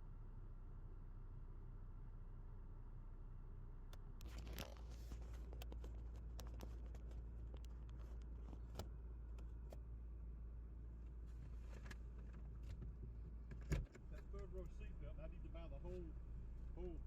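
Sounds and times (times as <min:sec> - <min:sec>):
low steady hum: 0:00.0 - 0:17.0
light clicks and rustling: 0:03.9 - 0:09.9.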